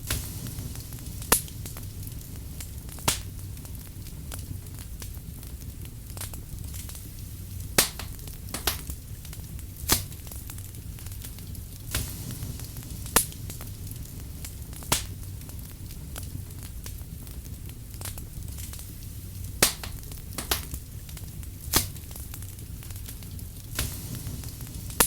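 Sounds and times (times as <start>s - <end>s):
fire rumbling: 0.0s - 25.0s
sharp pops of burning wood: 0.0s - 25.0s
wood crackling: 0.0s - 25.0s.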